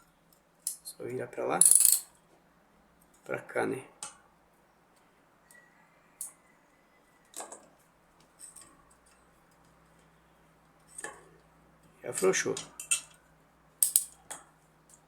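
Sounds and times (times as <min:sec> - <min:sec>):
wrench clicking on a bolt: 0:01.6 - 0:02.0, 0:13.8 - 0:14.2.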